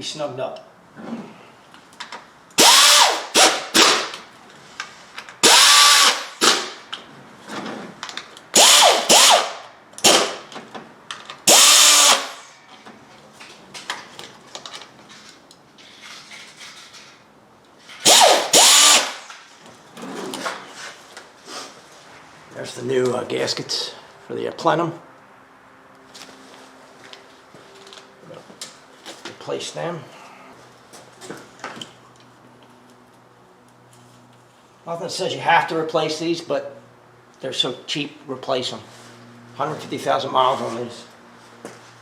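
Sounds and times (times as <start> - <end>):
cordless drill running in bursts: 2.6 - 4.1, 5.4 - 6.7, 8.6 - 10.3, 11.5 - 12.4, 18.0 - 19.3.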